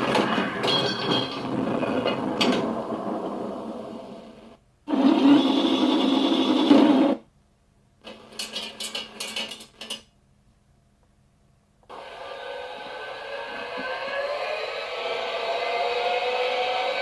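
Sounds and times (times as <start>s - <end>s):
loud steady mechanical noise: 0.0s - 7.3s, 11.9s - 17.0s
whirring mechanical sound: 0.0s - 7.3s, 11.8s - 17.0s.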